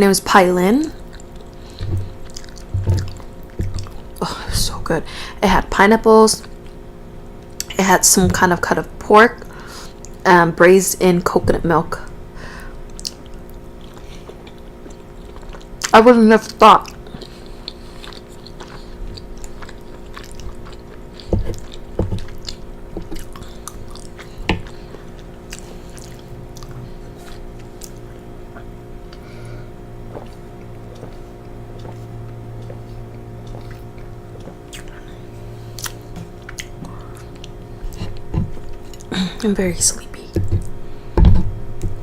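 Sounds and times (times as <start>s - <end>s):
steady low hum: 0.0s - 42.0s
person chewing pasta: 0.8s - 4.2s, 12.8s - 15.9s, 16.8s - 39.2s
wet mouth clicks and smacks: 12.9s - 14.0s, 35.8s - 37.5s.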